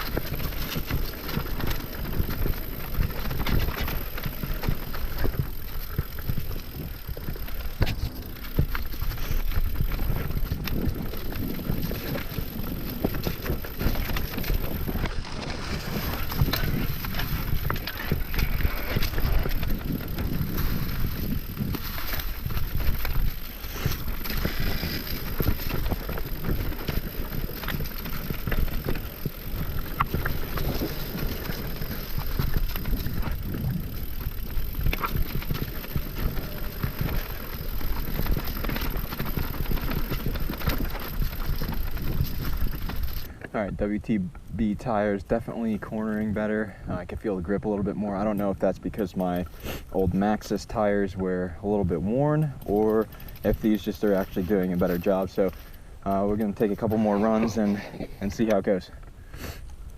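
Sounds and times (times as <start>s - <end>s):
wind buffeting microphone: 0.0s - 43.3s
bike frame and chain rattling: 0.0s - 43.4s, 48.0s - 59.1s
bike tyres rolling over dirt: 0.0s - 59.9s.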